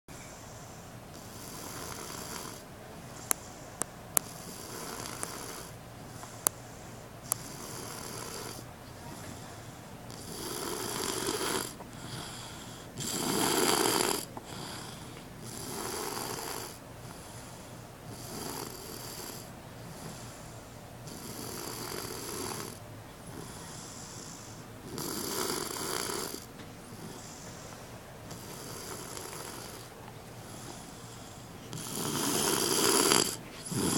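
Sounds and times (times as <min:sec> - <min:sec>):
child snoring softly: 0:00.2 - 0:02.7, 0:04.2 - 0:27.7, 0:28.3 - 0:33.9.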